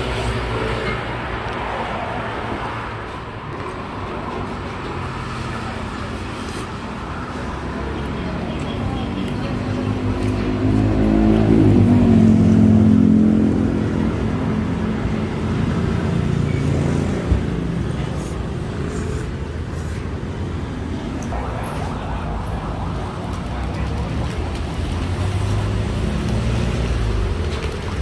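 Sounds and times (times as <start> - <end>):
road traffic: 0.0 - 28.0.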